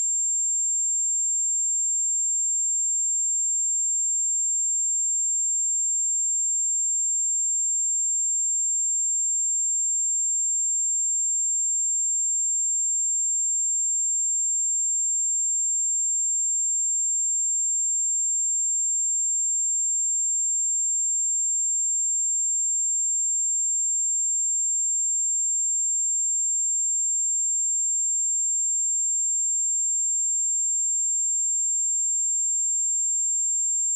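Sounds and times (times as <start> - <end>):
high-pitched sine test tone: 24.8 - 33.9.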